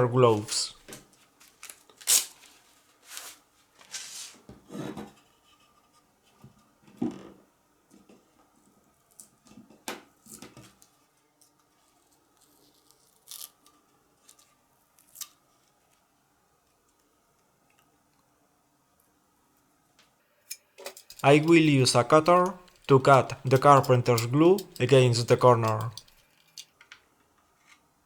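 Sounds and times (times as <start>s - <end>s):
tape rubbing and tearing: 2.0s - 2.5s.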